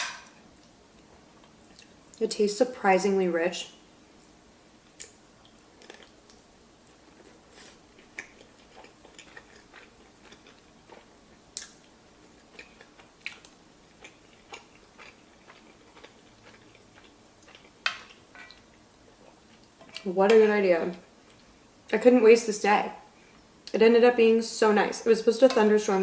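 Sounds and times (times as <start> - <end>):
person chewing: 5.0 - 20.0.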